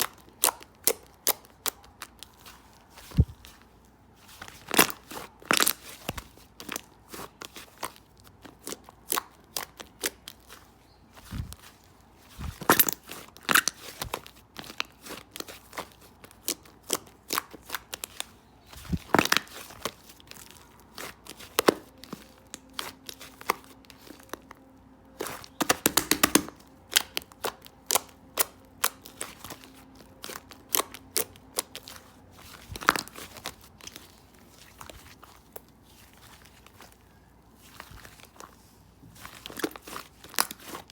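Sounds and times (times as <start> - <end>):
slime clicking and popping: 25.2 - 29.5.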